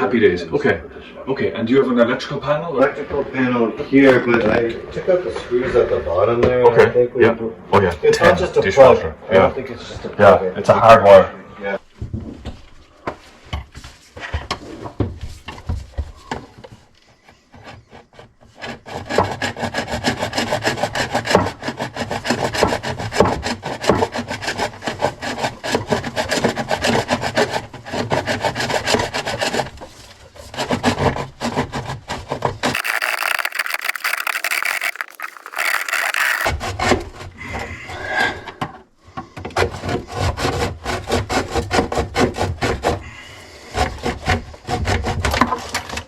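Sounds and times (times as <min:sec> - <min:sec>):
rasping and scraping: 0:32.7 - 0:36.6.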